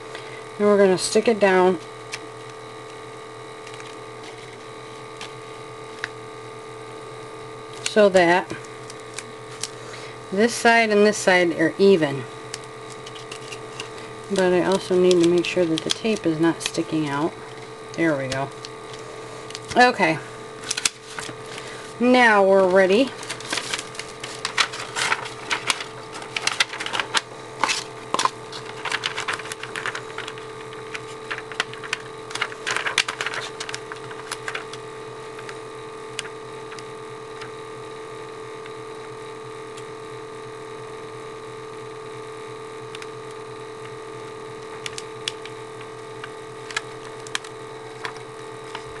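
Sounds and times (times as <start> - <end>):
background hum: 0.0 - 49.0
tape and paper crackling: 1.0 - 6.2, 7.7 - 10.0, 12.4 - 37.5, 42.9 - 49.0.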